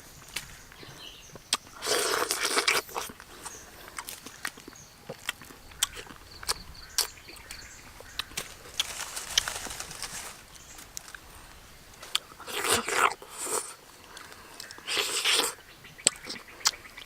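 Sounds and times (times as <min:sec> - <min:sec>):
rustling: 0:08.2 - 0:12.2.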